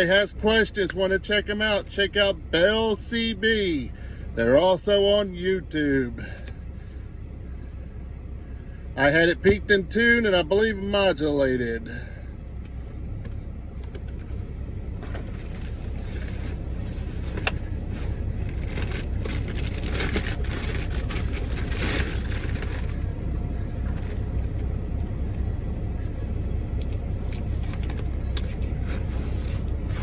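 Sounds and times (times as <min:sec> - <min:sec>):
truck engine idling: 0:00.0 - 0:30.0
rustling and scraping of handling: 0:06.4 - 0:08.0, 0:13.8 - 0:30.0.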